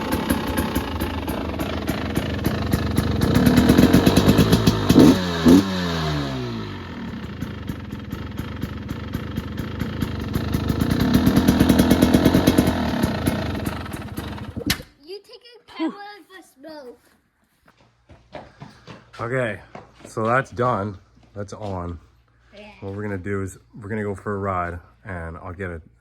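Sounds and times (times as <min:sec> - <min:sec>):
two-stroke engine idling and revving: 0:00.0 - 0:14.8.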